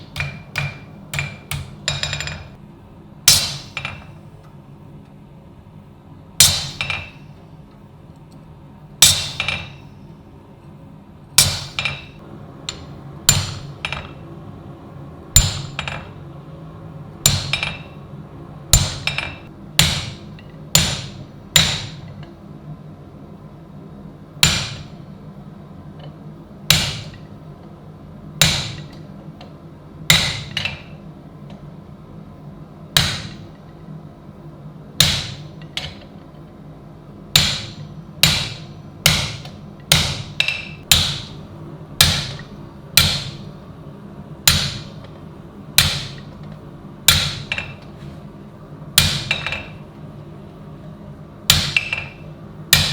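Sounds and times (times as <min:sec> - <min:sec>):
hammer striking steel: 0:00.0 - 0:02.6, 0:03.3 - 0:04.2, 0:06.4 - 0:07.2, 0:09.0 - 0:09.9, 0:11.4 - 0:14.2, 0:15.4 - 0:16.2, 0:17.2 - 0:18.0, 0:18.7 - 0:22.2, 0:24.4 - 0:25.0, 0:26.7 - 0:27.3, 0:28.4 - 0:29.0, 0:30.1 - 0:31.0, 0:33.0 - 0:33.5, 0:35.0 - 0:36.1, 0:37.4 - 0:41.4, 0:42.0 - 0:43.5, 0:44.5 - 0:45.1, 0:45.8 - 0:46.4, 0:47.1 - 0:47.8, 0:49.0 - 0:49.8, 0:51.5 - 0:52.9.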